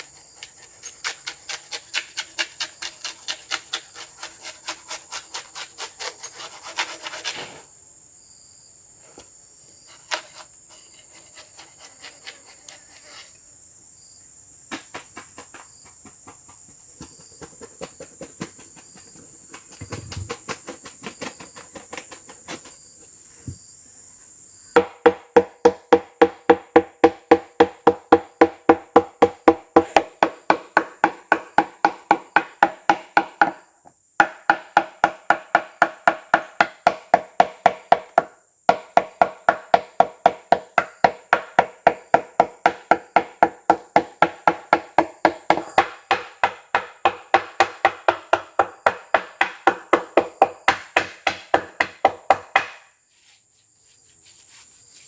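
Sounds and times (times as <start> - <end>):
faint insect drone: 0.0 - 55.0
chopping blows on wood: 14.7 - 22.7, 24.8 - 33.6, 34.2 - 52.9.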